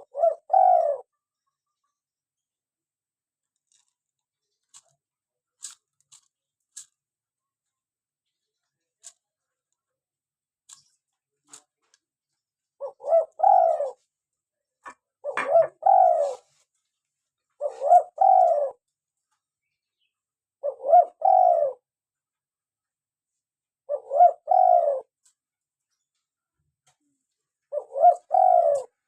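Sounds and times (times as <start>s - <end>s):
dove cooing: 0.0s - 1.1s, 12.8s - 14.0s, 15.2s - 16.5s, 17.6s - 18.8s, 20.6s - 21.8s, 23.9s - 25.2s, 27.7s - 29.0s.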